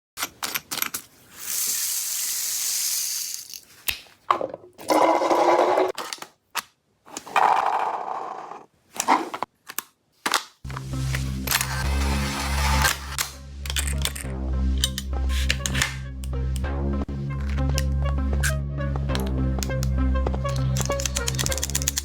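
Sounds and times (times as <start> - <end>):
toy blaster whirring: 1.4 - 3.6.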